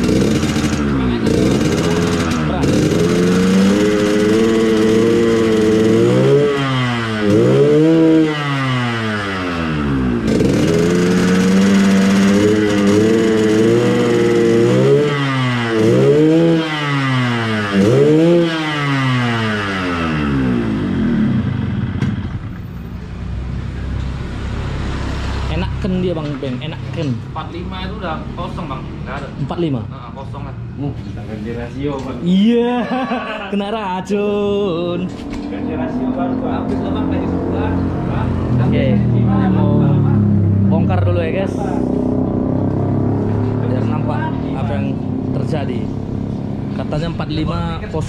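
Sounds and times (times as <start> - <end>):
two-stroke engine revving: 0.0 - 22.8, 34.3 - 48.0.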